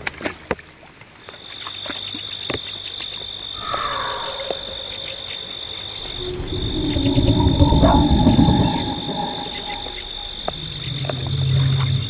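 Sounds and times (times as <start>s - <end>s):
high insect trill: 3.4s - 12.0s
frog call: 3.6s - 12.0s.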